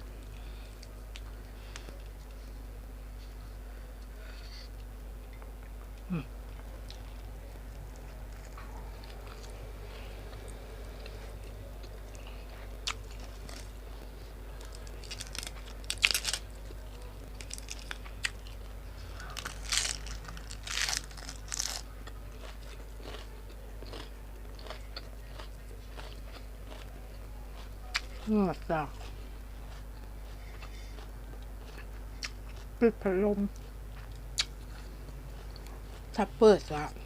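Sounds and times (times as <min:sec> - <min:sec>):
person chewing food: 0:04.6 - 0:32.8, 0:33.5 - 0:36.2
crisp bites: 0:12.9 - 0:13.7, 0:14.6 - 0:18.5, 0:19.2 - 0:21.9.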